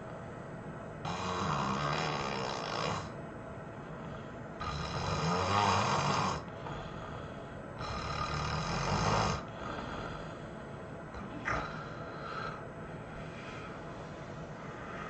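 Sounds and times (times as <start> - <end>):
person snoring: 1.0 - 3.2, 4.6 - 10.4, 11.2 - 12.6
quiet breathing: 3.8 - 5.1, 6.0 - 15.0.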